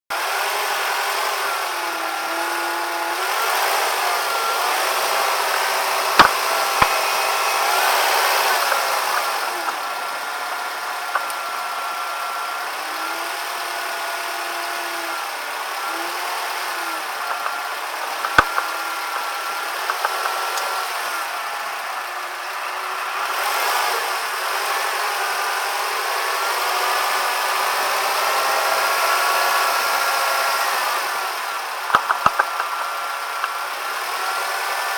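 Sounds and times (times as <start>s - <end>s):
car engine running: 0.2s - 34.9s
sharp clicks: 5.4s - 7.2s, 11.1s - 11.4s, 17.3s - 17.6s, 18.2s - 20.7s, 31.9s - 32.8s.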